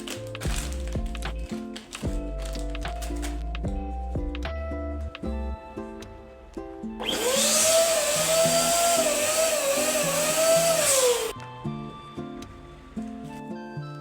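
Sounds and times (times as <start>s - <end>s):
electric balloon pump blowing: 7.0s - 11.4s.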